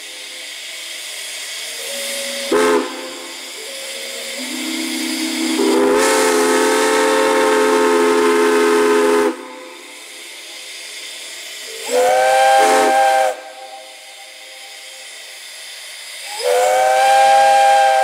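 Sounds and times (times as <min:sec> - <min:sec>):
steam hissing: 0:00.0 - 0:18.0
steam chime whistle blasts: 0:01.6 - 0:09.9, 0:11.6 - 0:15.3, 0:16.2 - 0:18.0.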